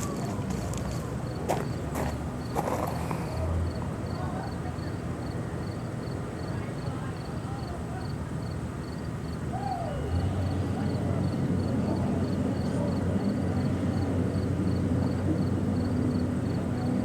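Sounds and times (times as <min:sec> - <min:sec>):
heavy machinery diesel engine: 0:08.7 - 0:17.0.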